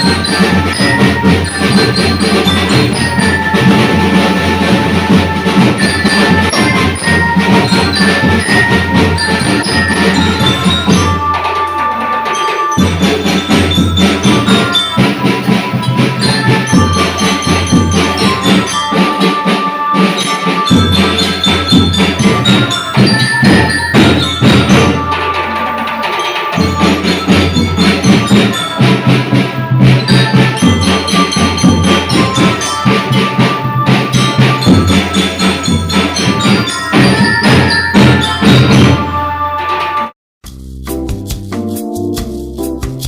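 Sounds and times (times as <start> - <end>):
sharp percussion strokes: 0.0 - 43.0
music with steady bass: 40.4 - 43.0.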